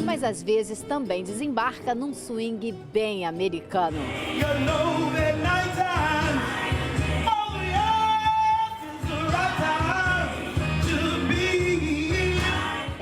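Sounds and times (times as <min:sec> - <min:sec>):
swing music: 0:00.0 - 0:13.0
bass line: 0:04.0 - 0:13.0
person singing: 0:04.0 - 0:13.0.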